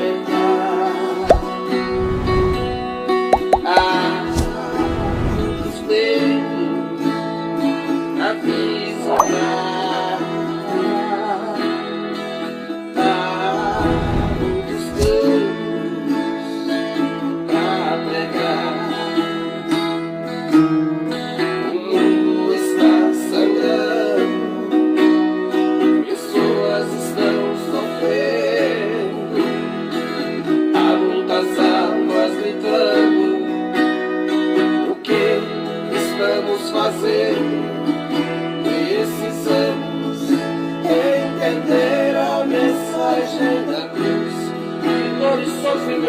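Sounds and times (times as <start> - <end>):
brief low rumble: 1.3 - 4.6
guitar strummed and picked: 5.5 - 46.0
voices singing: 38.6 - 46.0.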